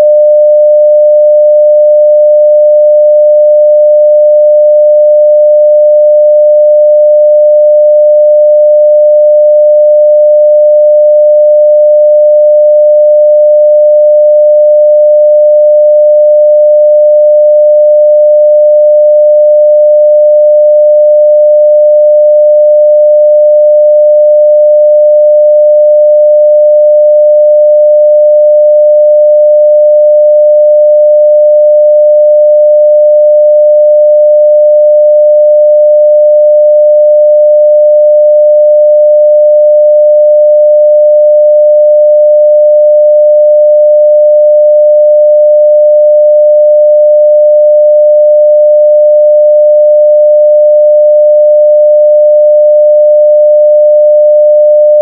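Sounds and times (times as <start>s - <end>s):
sine wave test tone: 0.0s - 55.0s.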